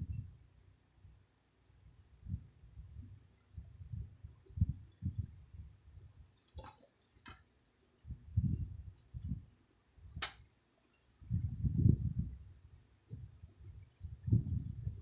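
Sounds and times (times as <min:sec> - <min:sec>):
sharp clicks: 0:10.2 - 0:10.4.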